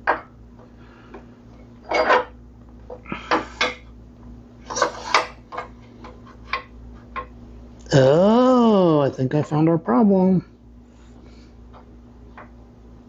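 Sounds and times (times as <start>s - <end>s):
faint steady hum: 0.0s - 13.0s.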